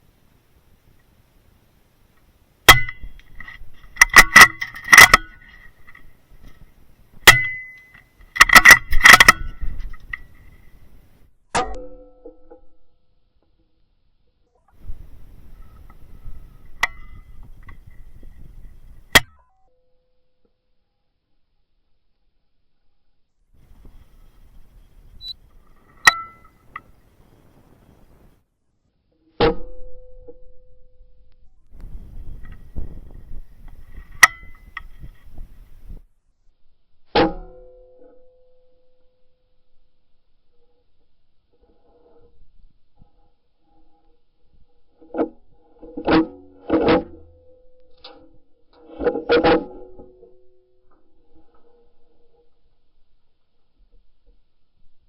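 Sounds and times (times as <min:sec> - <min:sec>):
metallic clicks and clanks: 0:02.7 - 0:06.6, 0:07.2 - 0:10.6
steady low tone: 0:29.4 - 0:55.0.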